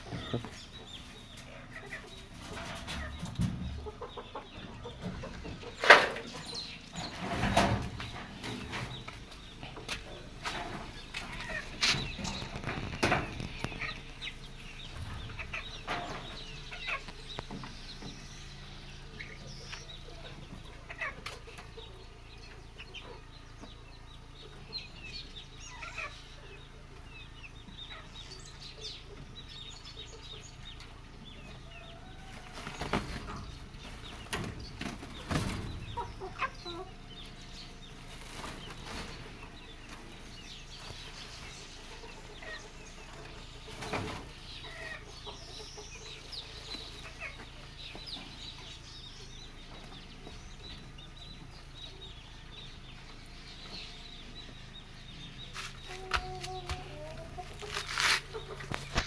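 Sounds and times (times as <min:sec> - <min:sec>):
knocks and rustling: 0:00.0 - 0:01.5, 0:02.1 - 0:18.4, 0:32.4 - 0:41.8
chickens clucking: 0:00.0 - 0:59.0.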